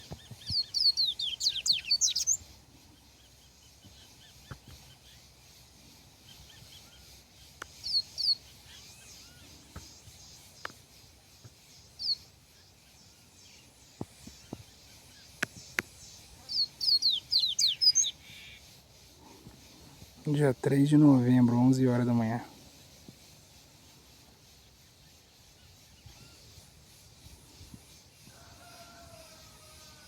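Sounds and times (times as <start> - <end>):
bird chirping: 0.0 - 29.9
faint ticks: 7.4 - 8.9, 9.6 - 12.2, 13.4 - 16.7.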